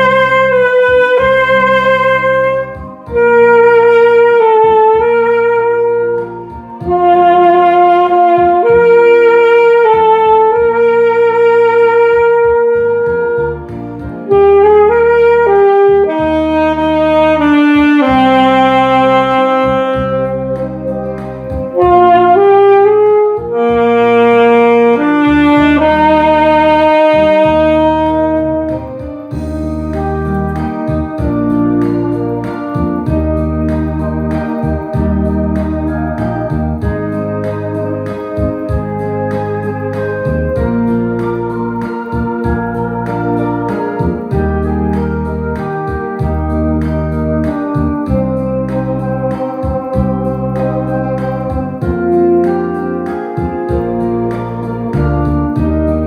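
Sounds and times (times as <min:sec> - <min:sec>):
backing accompaniment: 0:00.0 - 0:56.0
saxophone slow melody: 0:00.0 - 0:56.0.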